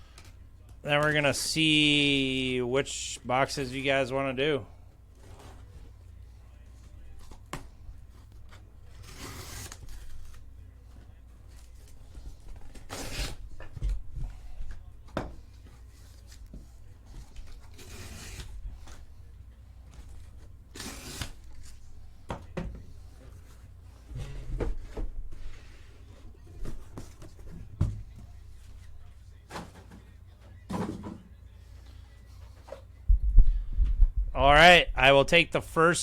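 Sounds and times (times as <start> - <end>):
tape and cardboard tearing: 8.9 - 10.4, 12.6 - 13.7, 17.4 - 19.0, 20.7 - 21.7
boxes being handled: 21.4 - 31.3.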